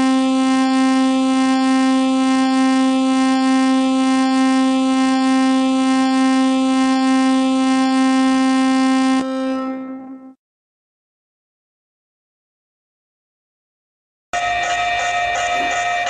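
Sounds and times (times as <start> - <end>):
loud steady buzzing alarm tone: 0.0 - 10.4, 14.4 - 16.0.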